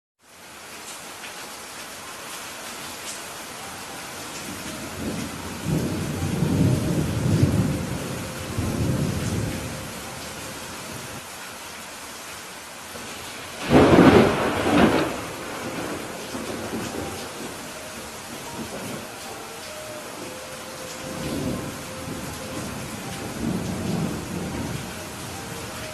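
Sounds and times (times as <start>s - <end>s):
steady rain: 0.2s - 25.9s
rolling thunder rumble: 4.4s - 10.2s, 13.5s - 19.3s, 20.1s - 25.9s
sharp thunderclap: 13.6s - 17.5s.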